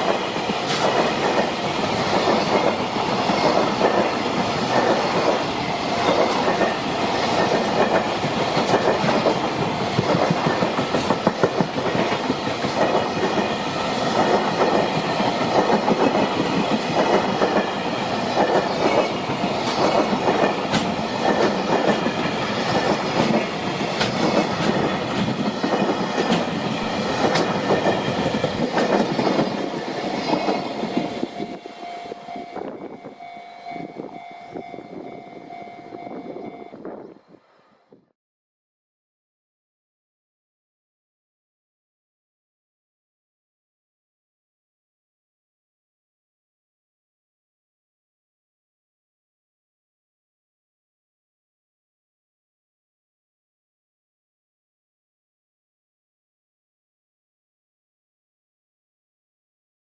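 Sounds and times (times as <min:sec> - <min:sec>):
train wheels clattering over rails: 0:00.0 - 0:31.6.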